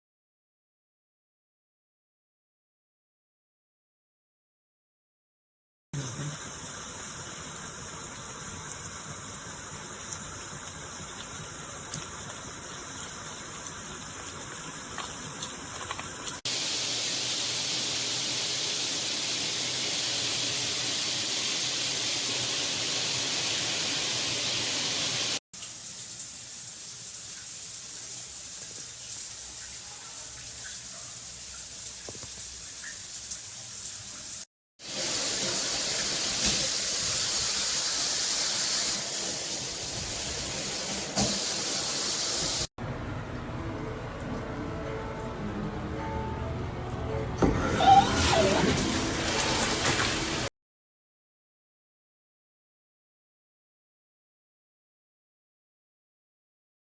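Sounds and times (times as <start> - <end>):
water spraying from shower head: 14.3 - 42.7, 47.6 - 50.5.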